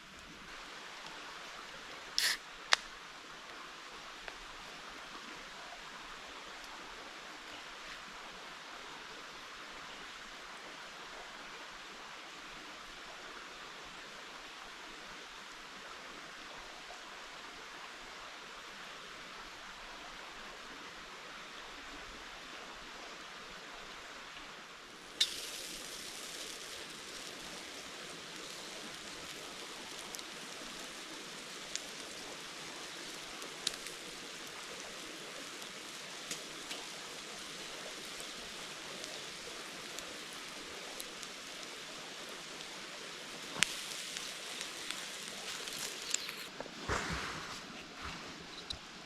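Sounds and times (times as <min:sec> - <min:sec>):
bright hiss: 0:02.2 - 0:03.0, 0:25.1 - 0:47.8.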